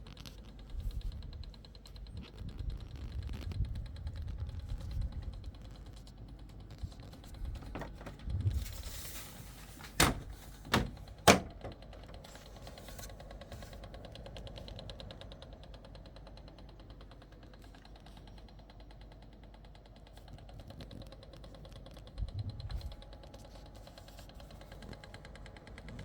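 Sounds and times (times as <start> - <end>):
air conditioner rattling ticks: 0.0 - 26.0
sharp knocks: 9.8 - 12.2.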